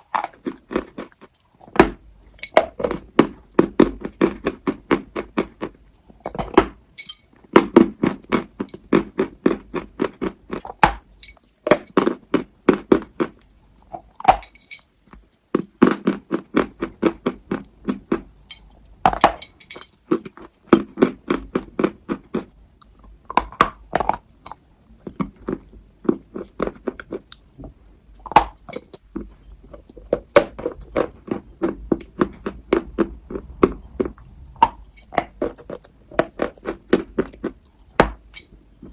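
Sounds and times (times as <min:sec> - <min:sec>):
chewing crunchy food: 0:00.0 - 0:38.9.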